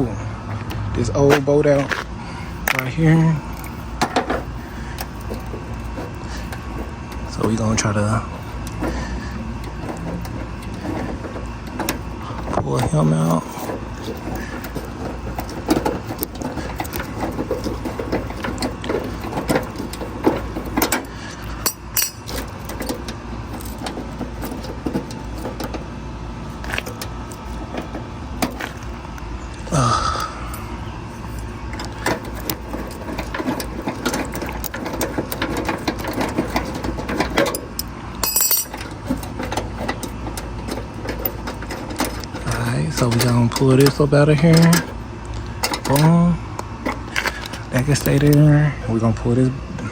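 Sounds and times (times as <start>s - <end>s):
steady low hum: 0.0s - 49.9s
hand tools clinking on metal: 3.6s - 25.8s, 31.8s - 45.0s, 45.6s - 46.2s.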